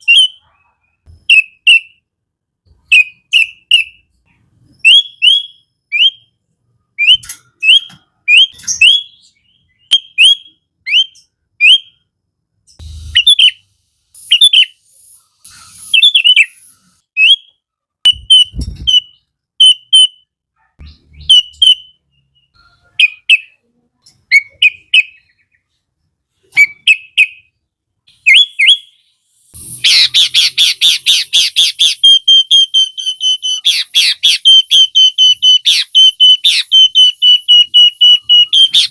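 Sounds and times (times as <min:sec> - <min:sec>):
bulbul chirping: 0:04.7 - 0:06.4, 0:12.7 - 0:13.6, 0:14.2 - 0:23.6, 0:26.5 - 0:38.9.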